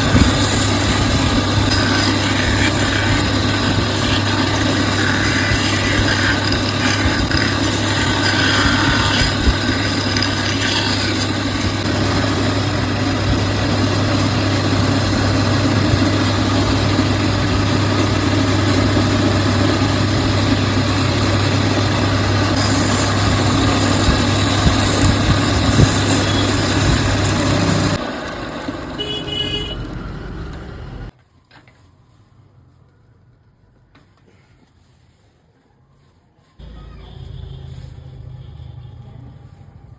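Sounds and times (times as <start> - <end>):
electric wood lathe running: 0.0 - 29.1.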